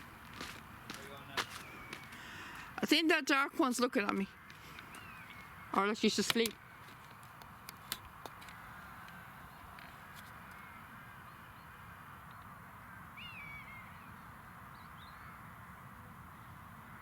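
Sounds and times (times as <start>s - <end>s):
faint outdoor background: 0.0s - 17.0s
bird calling: 0.8s - 2.8s, 4.4s - 5.8s, 12.3s - 15.4s.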